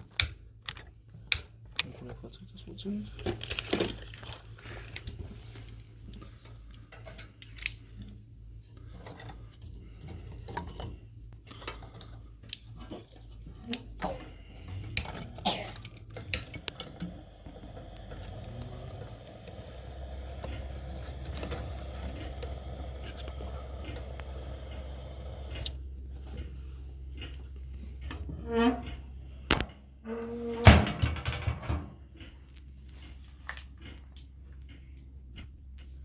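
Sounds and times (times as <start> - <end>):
low hum: 14.3 - 32.9.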